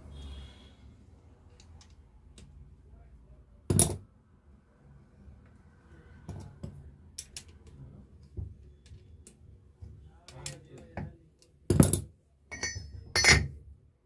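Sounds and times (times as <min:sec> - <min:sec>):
metal tools knocking and clinking: 0:11.7 - 0:13.6.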